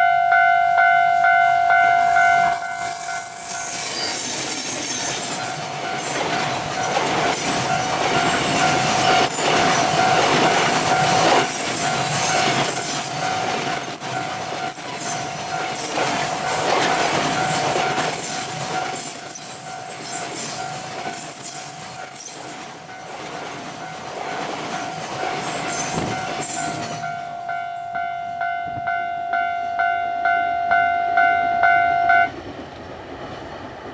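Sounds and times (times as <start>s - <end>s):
train wheel squeal: 0.0s - 28.2s
level crossing warning bell ringing: 0.0s - 32.4s
freight wagons clattering over rail joints: 4.0s - 21.2s, 21.8s - 27.3s.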